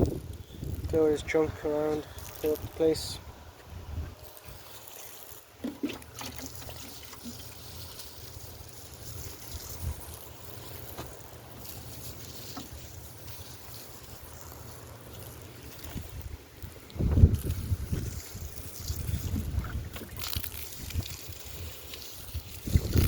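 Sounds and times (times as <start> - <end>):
wind rumbling on microphone: 0.0 - 4.6, 15.7 - 23.0.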